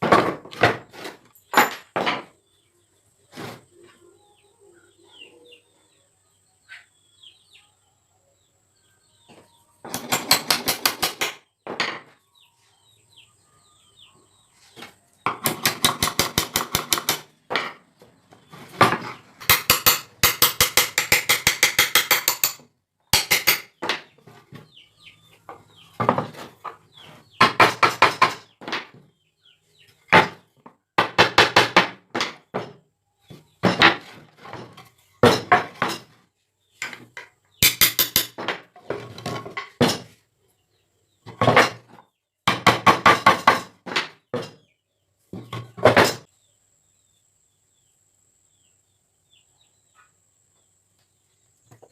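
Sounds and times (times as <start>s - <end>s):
rapid woodworking knocking: 9.9s - 12.1s, 15.2s - 17.8s, 18.8s - 22.6s, 27.4s - 29.0s, 31.0s - 36.1s, 41.3s - 44.5s.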